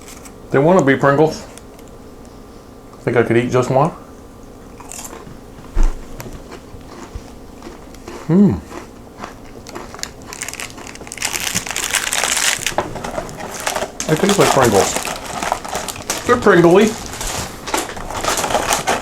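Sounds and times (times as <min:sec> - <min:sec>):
chips crunching: 0:04.8 - 0:05.4, 0:06.2 - 0:19.0
person humming mm: 0:08.2 - 0:08.7
packaging crinkling: 0:09.4 - 0:19.0.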